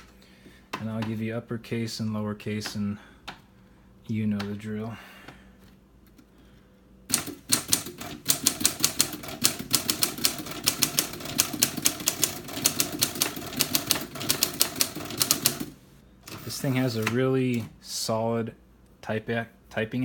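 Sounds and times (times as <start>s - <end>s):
manual typewriter typing: 7.1s - 17.7s.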